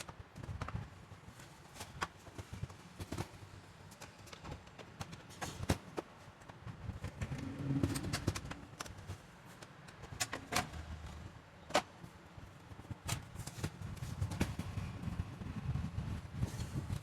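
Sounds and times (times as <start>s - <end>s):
low rumble: 7.0s - 8.8s.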